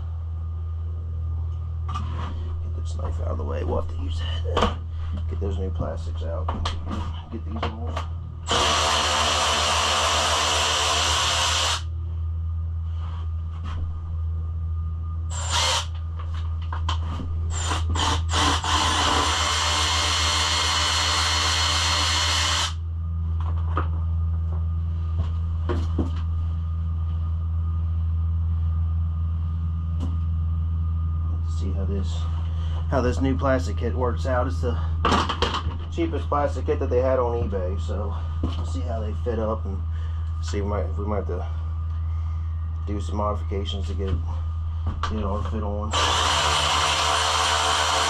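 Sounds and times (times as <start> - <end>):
power drill running: 8.4 - 11.9, 15.3 - 16.0, 17.5 - 22.8, 45.9 - 48.0.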